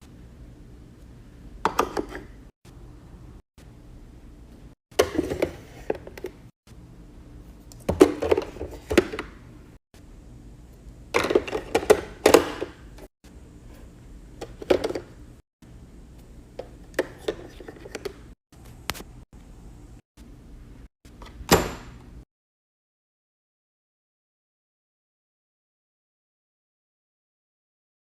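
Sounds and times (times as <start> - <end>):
containers knocking and clicking: 1.6 - 2.4, 5.0 - 6.4, 7.7 - 9.4, 11.2 - 13.1, 14.4 - 15.2, 16.6 - 18.3.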